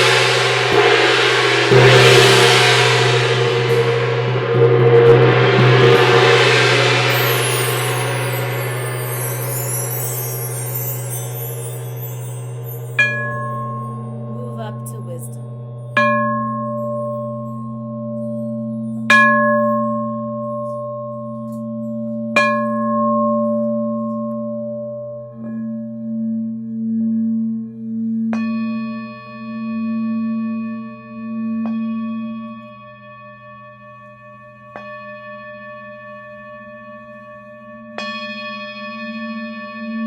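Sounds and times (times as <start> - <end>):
singing bowls ringing: 3.0 - 14.5.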